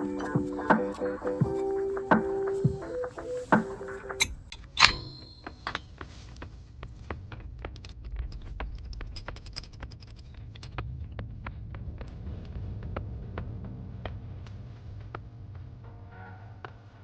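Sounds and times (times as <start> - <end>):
metallic clink with ring: 4.2 - 5.8.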